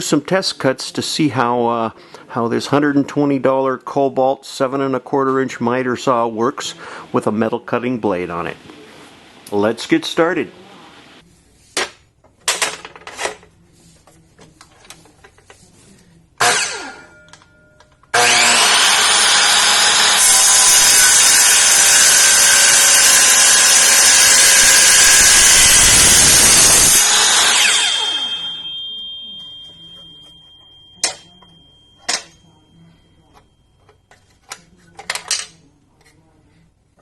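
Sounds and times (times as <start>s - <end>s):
miter saw cutting steel: 16.4s - 17.1s, 18.1s - 29.2s.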